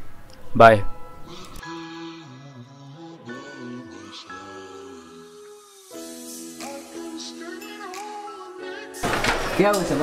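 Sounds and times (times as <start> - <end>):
background music chords: 0.0 - 10.0.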